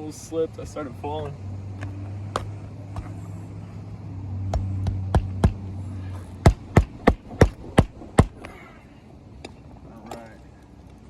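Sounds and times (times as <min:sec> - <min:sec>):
hammer driving nails into shingle: 0:04.5 - 0:05.6, 0:06.4 - 0:08.6.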